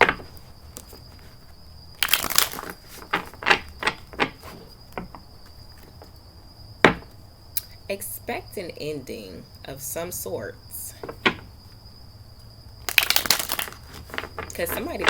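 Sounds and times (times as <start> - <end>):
cards shuffling: 0.0 - 5.2, 12.8 - 15.0
cards snapping and tapping: 2.0 - 5.2, 12.8 - 14.9.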